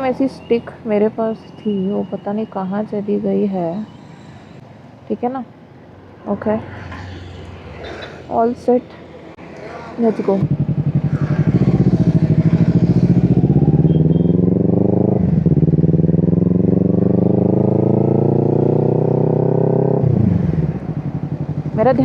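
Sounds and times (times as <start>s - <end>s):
motorcycle engine accelerating: 9.4s - 22.0s.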